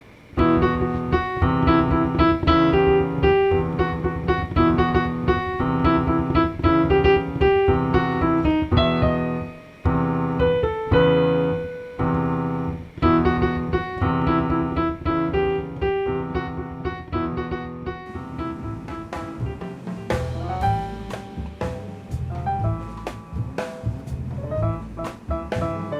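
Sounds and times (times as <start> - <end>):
lively piano melody: 0.3 - 25.9.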